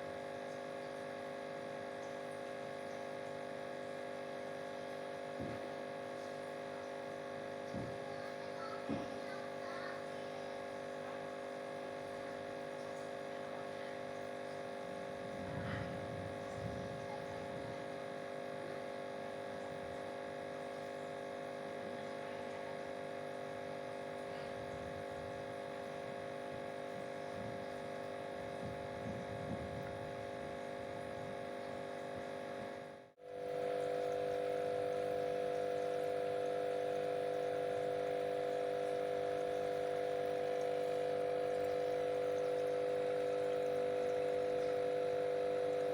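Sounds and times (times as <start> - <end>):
electric hum: 23.0 - 45.9.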